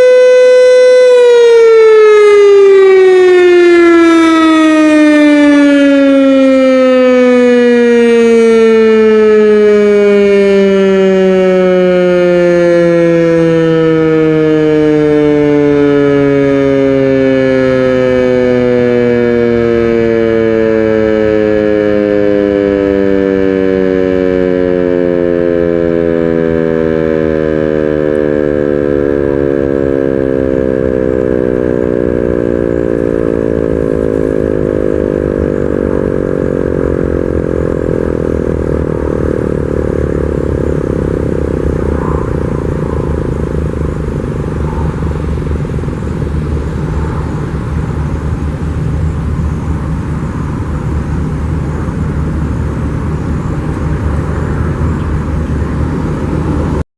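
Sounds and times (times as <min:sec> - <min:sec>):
siren winding down: 0:00.0 - 0:56.8
low background rumble: 0:22.1 - 0:56.8.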